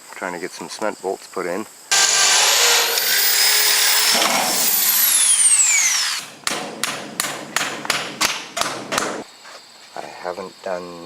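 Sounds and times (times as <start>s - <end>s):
hammer drill whining: 1.9s - 6.4s
sharp knocks: 6.2s - 9.3s.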